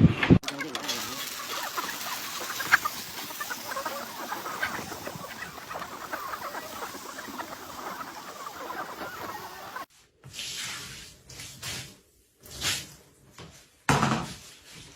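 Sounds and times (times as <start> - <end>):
faint steady hiss: 0.5 - 9.9.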